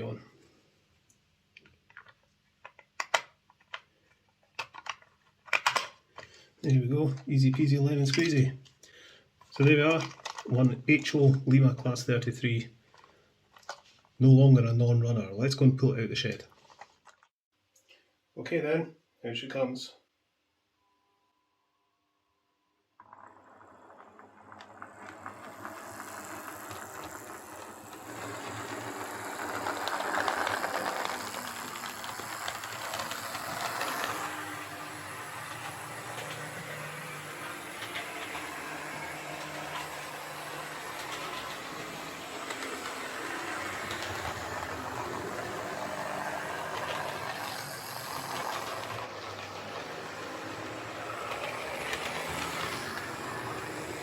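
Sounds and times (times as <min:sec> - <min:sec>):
model train motor whirring: 0:09.5 - 0:12.0, 0:23.0 - 0:54.0
wheels rattling over rails: 0:09.5 - 0:12.1, 0:23.0 - 0:54.0.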